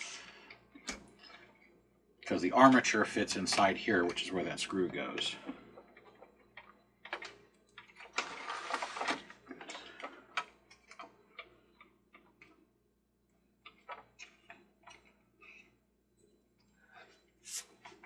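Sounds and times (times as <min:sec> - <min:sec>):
plastic parts clicking and knocking: 0:03.3 - 0:11.2.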